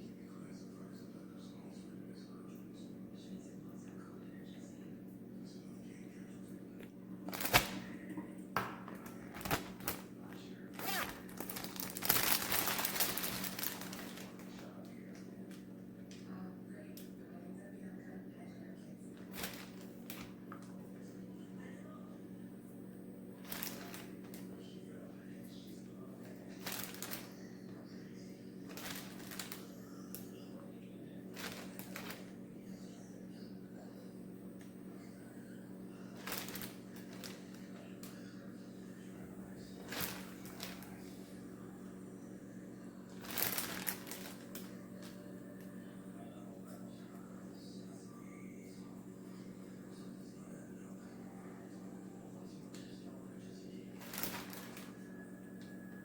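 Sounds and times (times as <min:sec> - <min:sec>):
steady low hum: 0:00.0 - 0:56.0
rustling handling noise: 0:07.2 - 0:08.1, 0:08.9 - 0:15.7, 0:19.2 - 0:20.4, 0:23.4 - 0:24.6, 0:26.1 - 0:27.7, 0:28.6 - 0:30.3, 0:31.3 - 0:32.4, 0:36.1 - 0:38.5, 0:39.1 - 0:41.4, 0:43.1 - 0:45.7, 0:53.9 - 0:55.1
dense rustling: 0:43.2 - 0:44.7.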